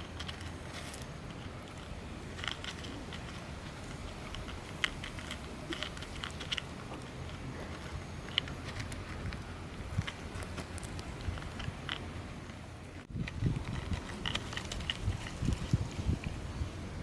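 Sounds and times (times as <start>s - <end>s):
cat chewing dry food: 0.0s - 12.4s, 13.0s - 16.4s.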